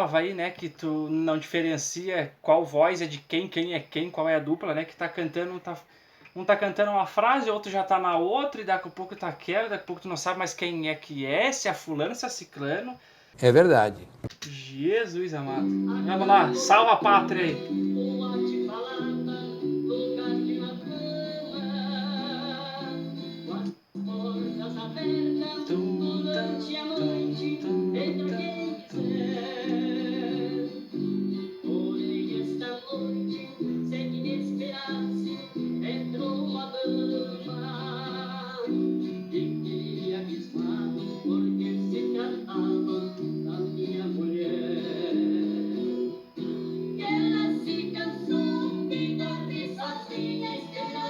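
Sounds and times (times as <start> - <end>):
guitar accompaniment: 15.4 - 51.0
duo singing in harmony: 15.7 - 51.0.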